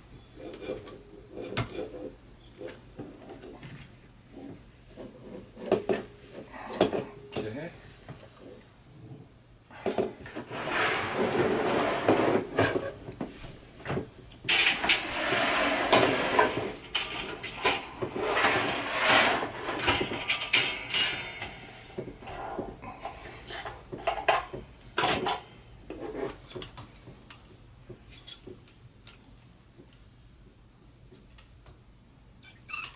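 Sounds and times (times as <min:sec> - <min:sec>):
hard objects clattering: 0:13.9 - 0:26.8.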